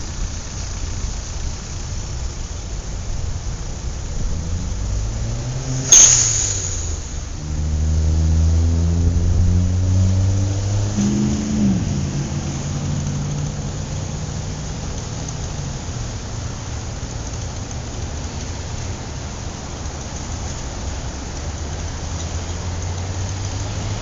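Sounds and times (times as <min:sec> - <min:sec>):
city street traffic: 0:00.0 - 0:24.0
vehicle engine humming: 0:00.0 - 0:24.0
sharp hiss: 0:05.4 - 0:07.4.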